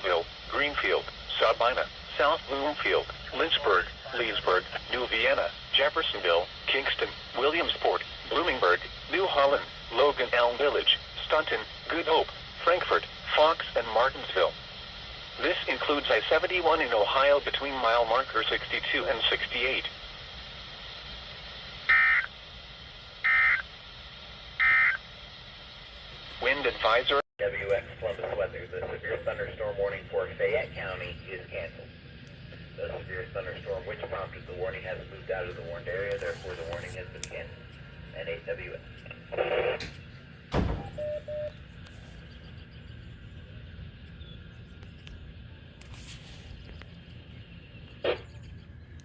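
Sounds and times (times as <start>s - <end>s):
low steady rumble: 0.0s - 49.0s
digital data tone bursts: 21.9s - 22.3s, 23.2s - 23.7s, 24.6s - 25.0s
short electronic beeps: 40.8s - 41.6s.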